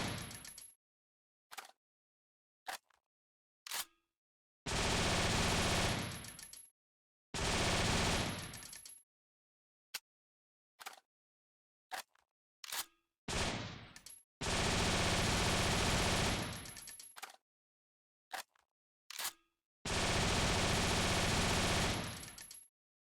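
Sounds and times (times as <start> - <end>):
single rifle shot: 0.0 - 0.4
automatic gunfire bursts: 7.4 - 8.5, 14.4 - 16.6, 19.9 - 22.3.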